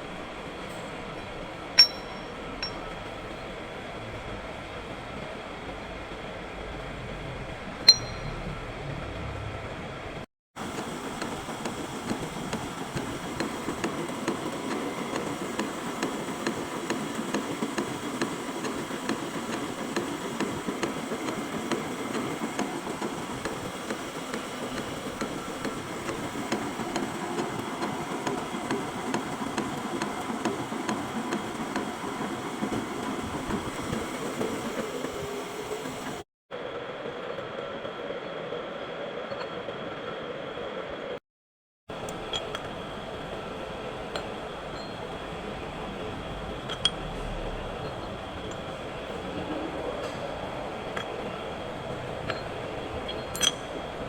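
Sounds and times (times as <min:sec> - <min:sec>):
metal lathe running: 0:10.6 - 0:36.2.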